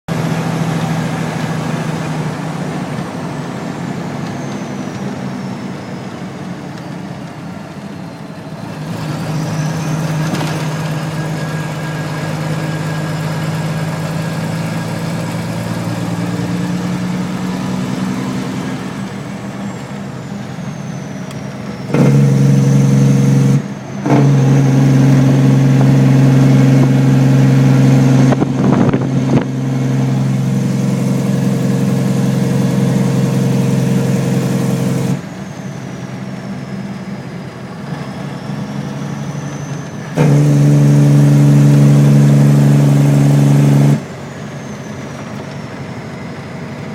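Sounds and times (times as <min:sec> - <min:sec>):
heavy truck engine under load: 0:00.1 - 0:46.9.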